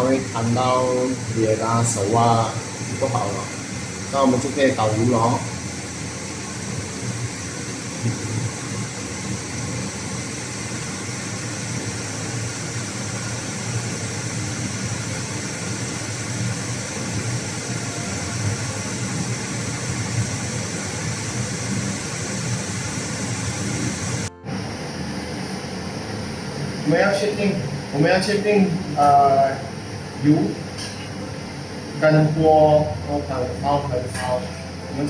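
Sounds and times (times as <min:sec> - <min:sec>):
steady rushing noise: 0:18.3 - 0:35.0
low hum: 0:21.4 - 0:35.0.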